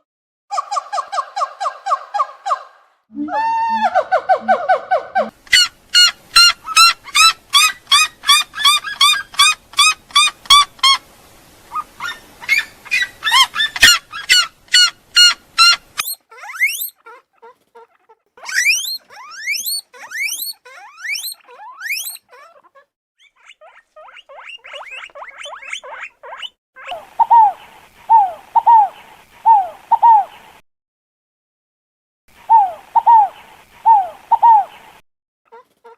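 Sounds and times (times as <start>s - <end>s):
rapid repeated bird chirps: 18.4s - 22.3s
rising whistled bird calls: 18.5s - 22.2s.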